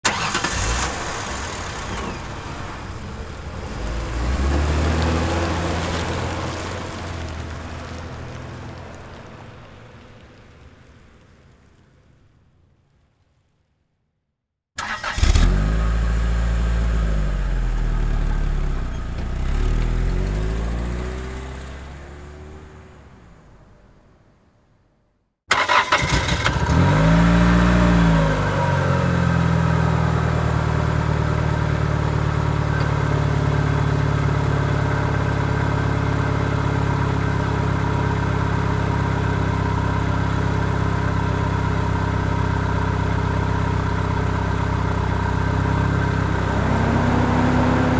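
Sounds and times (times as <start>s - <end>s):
car engine starting and revving: 0.0s - 8.4s, 14.8s - 23.8s, 25.5s - 47.9s
car engine idling: 25.5s - 47.9s.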